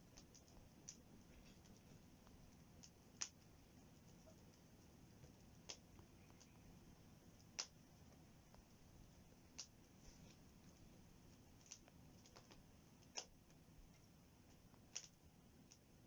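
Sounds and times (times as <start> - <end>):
quiet hiss: 0.0 - 16.0
wood fire crackling: 0.0 - 16.0.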